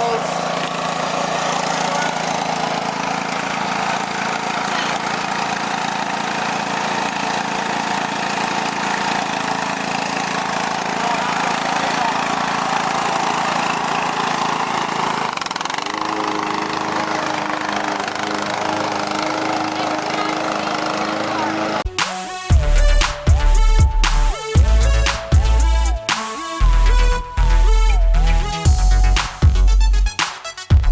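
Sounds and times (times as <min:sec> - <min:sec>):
riding lawn mower engine: 0:00.0 - 0:21.9.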